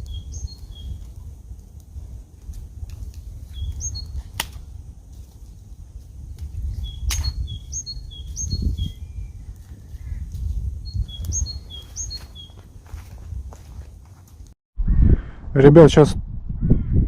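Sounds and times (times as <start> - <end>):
small birds chirping: 0.0 - 2.0, 2.8 - 4.5, 6.2 - 13.7
sharp cracks: 4.2 - 4.7.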